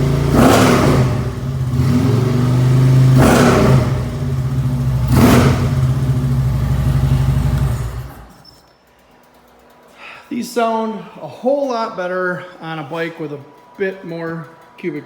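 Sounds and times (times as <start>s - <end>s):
motorcycle engine idling: 0.0s - 8.3s.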